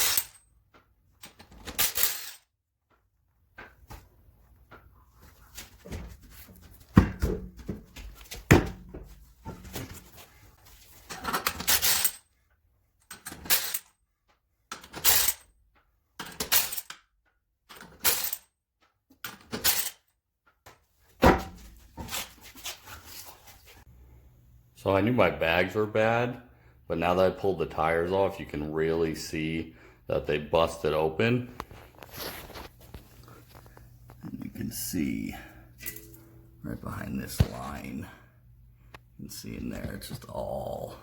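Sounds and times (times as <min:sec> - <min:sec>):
metal clanks and scraping: 0:00.0 - 0:02.5, 0:10.9 - 0:12.3, 0:14.7 - 0:15.5, 0:35.8 - 0:36.4.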